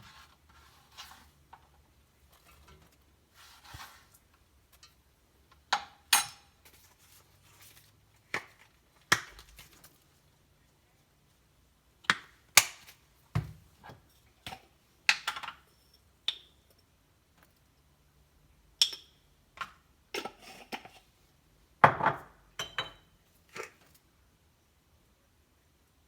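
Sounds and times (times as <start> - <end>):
dishes and utensils clinking: 22.6 - 23.1.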